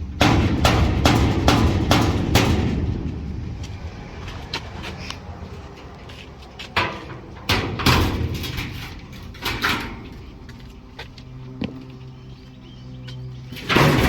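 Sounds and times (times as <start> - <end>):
steel panels knocking and clanking: 0.0 - 4.2, 6.6 - 10.6, 13.5 - 14.0.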